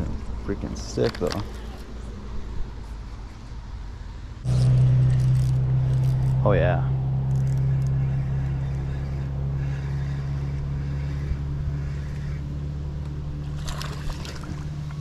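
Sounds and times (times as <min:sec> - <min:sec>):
boat motor humming: 0:04.4 - 0:15.0.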